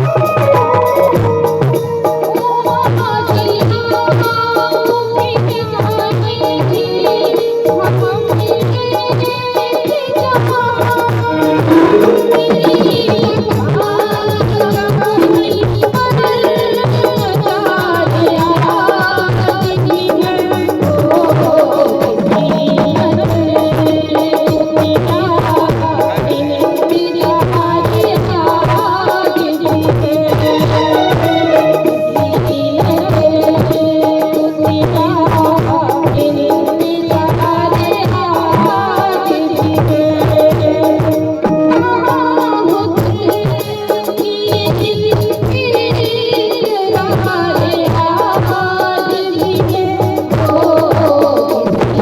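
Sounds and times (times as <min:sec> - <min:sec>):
tabla rhythm: 0:00.0 - 0:52.0
melody line: 0:11.3 - 0:13.8, 0:30.5 - 0:33.2.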